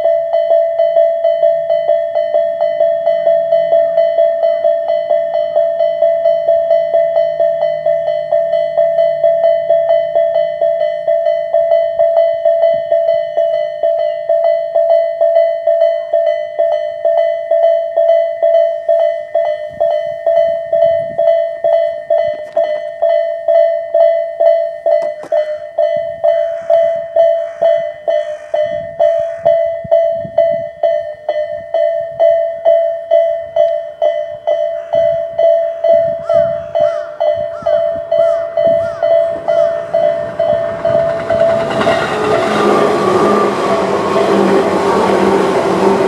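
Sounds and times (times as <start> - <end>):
electronic level crossing bell: 0.0 - 46.0
train wheels clattering over rail joints: 37.5 - 46.0.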